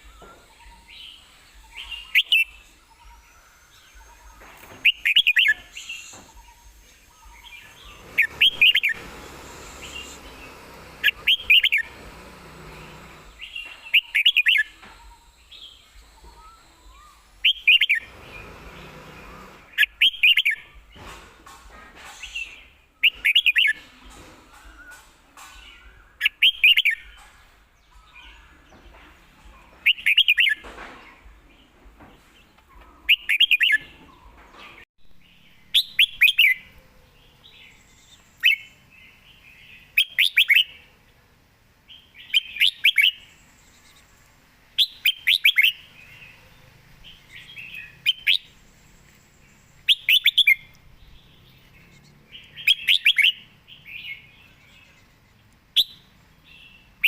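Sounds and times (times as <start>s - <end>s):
bird singing short phrases: 0.0s - 9.0s, 49.8s - 57.0s.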